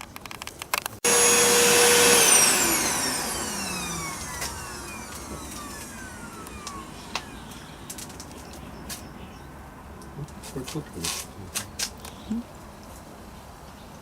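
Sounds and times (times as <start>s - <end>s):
vacuum cleaner winding down: 1.0s - 8.1s.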